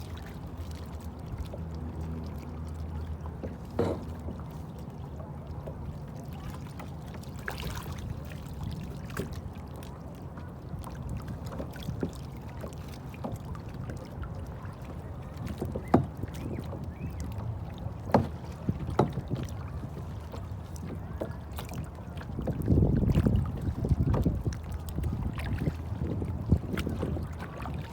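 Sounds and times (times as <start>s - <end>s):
low rumble of water and wind: 0.0s - 27.9s
short sharp knocks: 3.6s - 4.4s.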